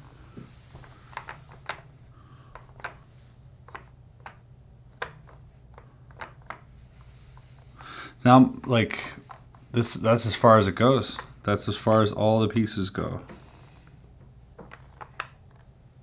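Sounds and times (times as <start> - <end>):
faint steady hum: 0.0 - 16.0
wooden puzzle pieces clicking: 0.8 - 1.9, 2.5 - 3.0, 3.6 - 6.7, 14.6 - 15.7.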